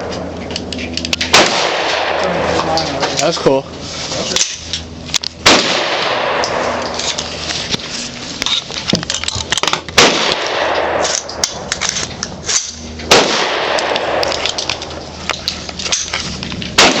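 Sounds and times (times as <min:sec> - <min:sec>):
rifle shots: 0:01.2 - 0:02.6, 0:05.4 - 0:06.8, 0:09.8 - 0:11.7, 0:12.5 - 0:14.8, 0:16.8 - 0:17.0
sharp metallic clicks and clinks: 0:11.1 - 0:13.0, 0:13.8 - 0:16.8.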